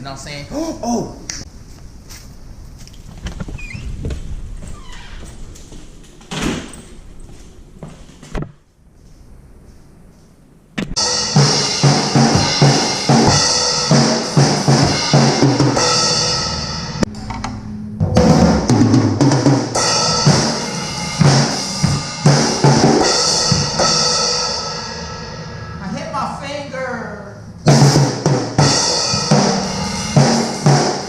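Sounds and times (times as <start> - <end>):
cymbal wash: 11.0 - 18.8, 19.5 - 26.8, 27.4 - 31.0
kick drum: 12.2 - 13.5.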